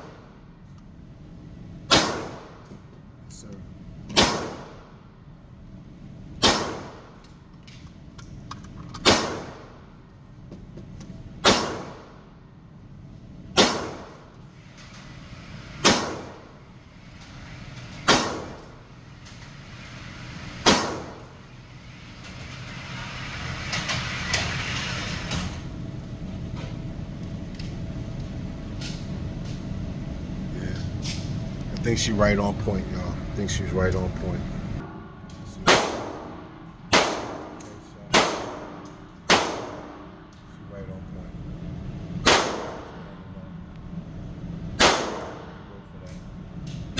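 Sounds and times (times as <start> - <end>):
gunshots: 1.9 - 2.6, 4.2 - 4.9, 6.4 - 7.1, 9.0 - 9.7, 11.4 - 12.2, 13.6 - 14.2, 15.8 - 16.4, 18.0 - 18.6, 20.6 - 21.2, 35.6 - 40.0, 42.2 - 43.0, 44.8 - 45.6.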